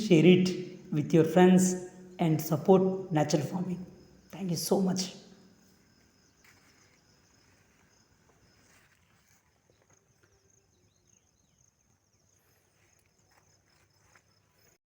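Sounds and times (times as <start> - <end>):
insect drone: 0.1 - 14.8.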